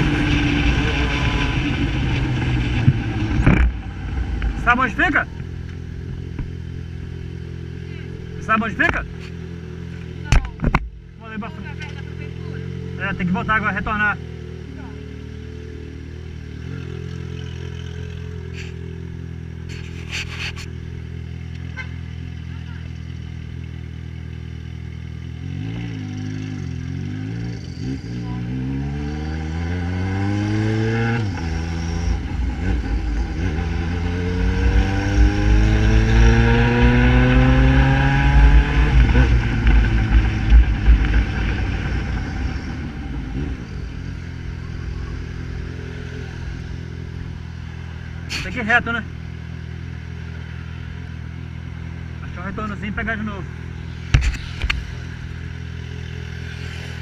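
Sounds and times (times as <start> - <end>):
motorcycle engine running: 0.0 - 57.0
motorcycle engine idling: 41.8 - 57.0.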